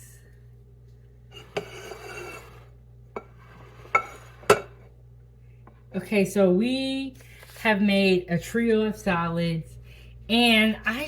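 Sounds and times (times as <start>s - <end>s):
dish scraping on countertop: 1.3s - 5.0s
dishes clinking: 1.4s - 2.6s, 3.2s - 4.9s.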